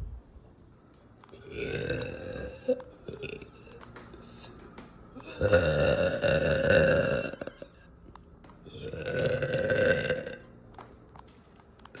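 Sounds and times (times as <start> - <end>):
woman burping: 1.4 - 3.7, 5.2 - 7.8, 8.7 - 10.5.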